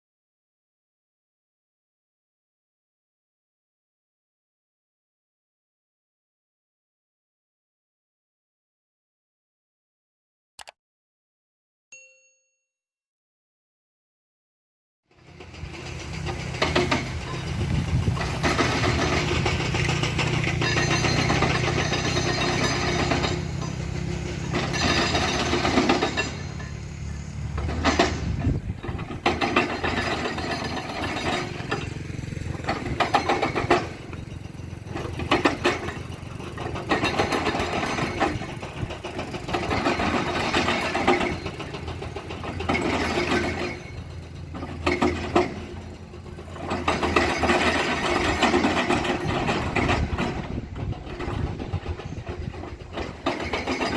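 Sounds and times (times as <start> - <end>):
excavator diesel engine surging: 15.1 - 53.9
sharp metal clanks: 15.2 - 53.9.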